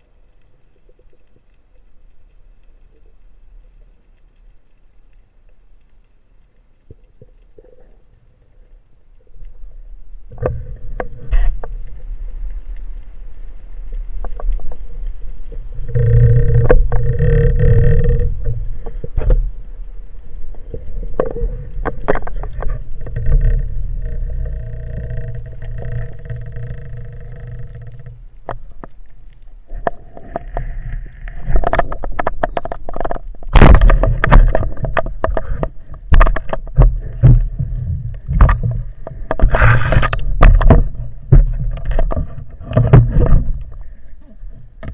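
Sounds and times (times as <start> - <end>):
low underwater rumble: 0.0 - 44.9
humming tone: 15.5 - 19.6, 20.7 - 29.0
sharp clicks and knocks: 15.9 - 19.5, 20.8 - 30.7, 31.3 - 43.9.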